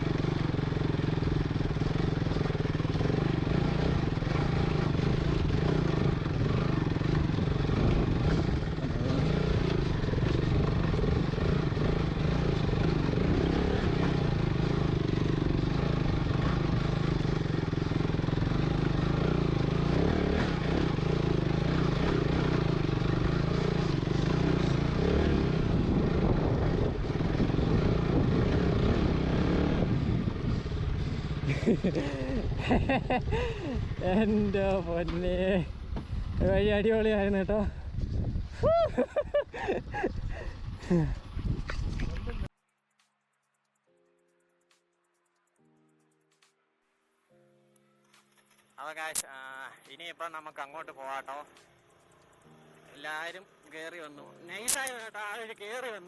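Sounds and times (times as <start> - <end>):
motorcycle engine pulling under load: 0.0 - 34.1.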